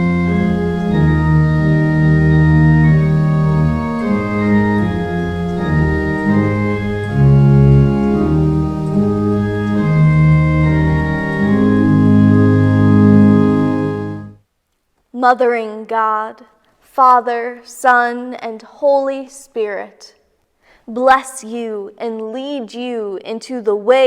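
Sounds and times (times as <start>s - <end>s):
organ playing slow chords: 0.0s - 14.4s.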